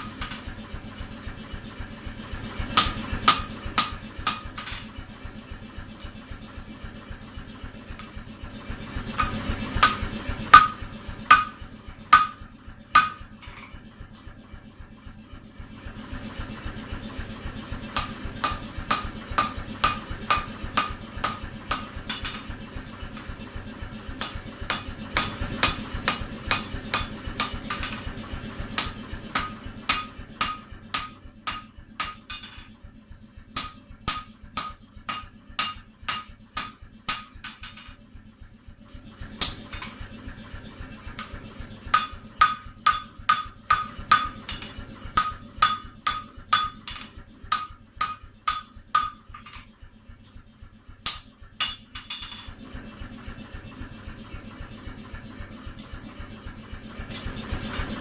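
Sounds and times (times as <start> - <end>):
hammer striking steel on anvil: 0.0 - 0.8, 2.7 - 5.1, 7.9 - 8.3, 9.0 - 14.3, 17.9 - 32.9, 33.5 - 38.1, 39.3 - 40.1, 41.1 - 49.8, 51.0 - 52.6.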